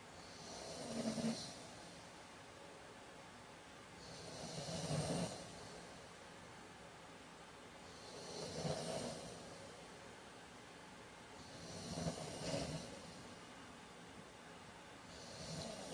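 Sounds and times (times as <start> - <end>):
man snoring: 0.2 - 1.6, 4.0 - 5.6, 7.9 - 9.5, 11.4 - 13.1, 15.1 - 15.9.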